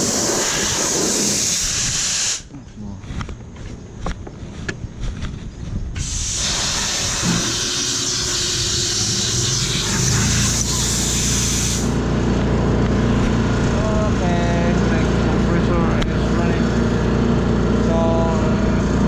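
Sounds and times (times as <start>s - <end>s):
air blast hissing: 0.0s - 2.5s, 6.0s - 12.0s
low machine rumble: 8.2s - 19.0s.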